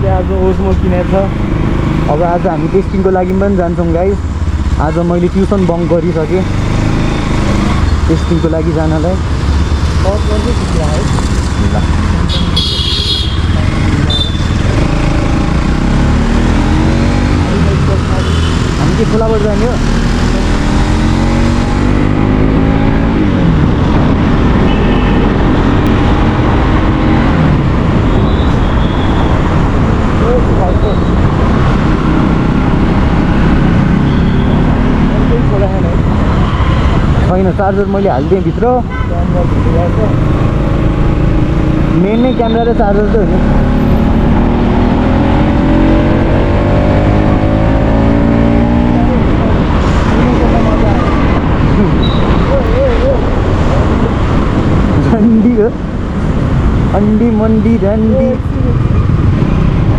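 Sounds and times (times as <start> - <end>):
vehicle engine accelerating: 0.0 - 12.3, 13.3 - 28.2, 29.3 - 38.2, 39.4 - 59.9
road and wind noise: 0.0 - 59.9
vehicle engine changing pitch: 39.4 - 59.9.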